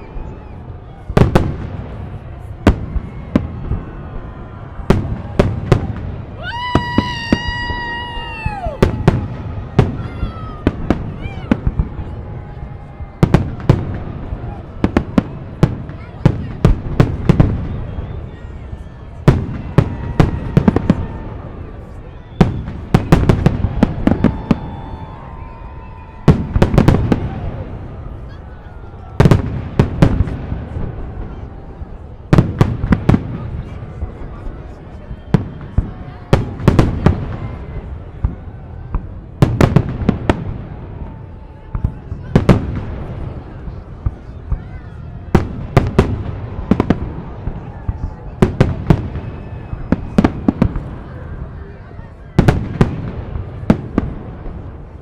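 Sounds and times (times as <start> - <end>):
long high firework whistle: 0.0 - 33.2, 44.2 - 54.1.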